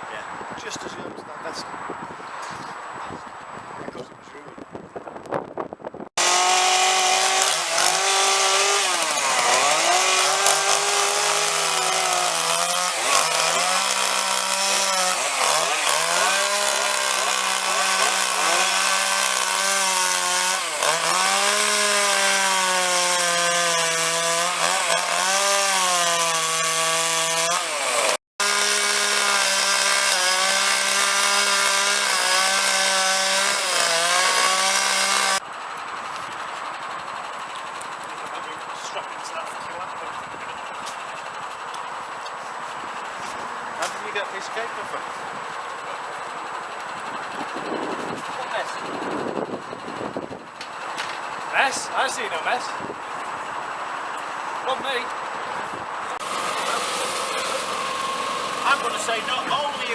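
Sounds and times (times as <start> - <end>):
chainsaw cutting wood: 6.2 - 36.4, 43.0 - 52.6, 56.1 - 59.9.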